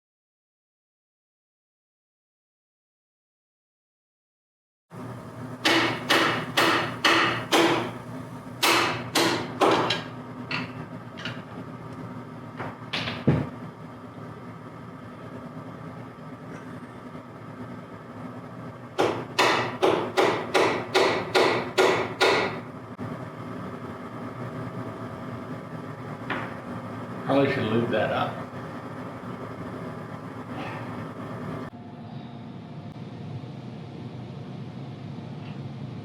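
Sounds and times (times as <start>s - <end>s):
hammer tapping metal: 5.6s - 8.0s, 8.6s - 11.3s, 19.0s - 22.6s.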